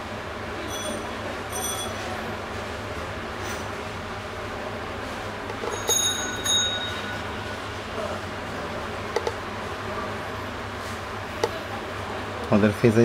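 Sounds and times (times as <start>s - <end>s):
steady background hum: 0.0s - 13.0s
high ringing chimes: 0.6s - 2.0s, 5.7s - 7.4s.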